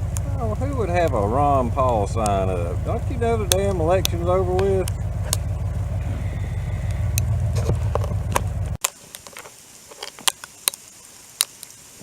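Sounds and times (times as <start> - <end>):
engine low rumble: 0.0 - 8.8
sleet ticking on surfaces: 0.0 - 8.8.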